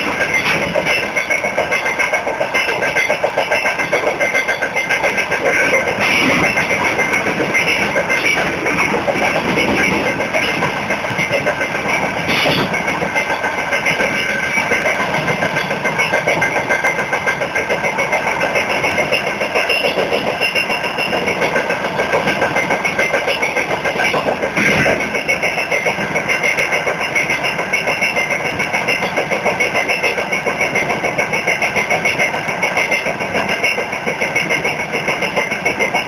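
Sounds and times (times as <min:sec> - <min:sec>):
train wheels clattering on rails: 0:00.0 - 0:36.0.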